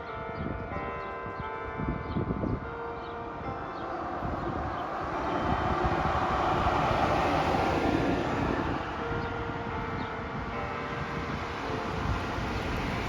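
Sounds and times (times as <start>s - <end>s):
faint hum of church bells: 0.0s - 13.0s
vehicle passing by: 3.1s - 9.7s.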